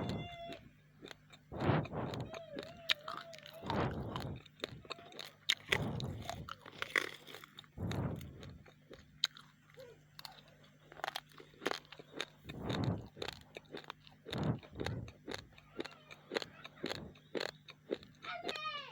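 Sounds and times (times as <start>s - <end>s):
raw rice being crunched: 1.0s - 8.4s.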